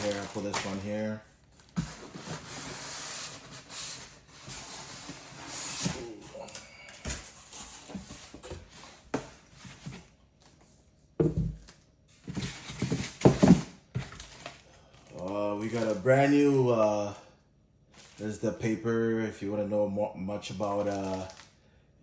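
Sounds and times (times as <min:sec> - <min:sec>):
packaging rustling: 0:00.0 - 0:06.1, 0:11.5 - 0:16.6, 0:18.0 - 0:18.4, 0:20.6 - 0:21.6
items being set down: 0:11.2 - 0:14.4.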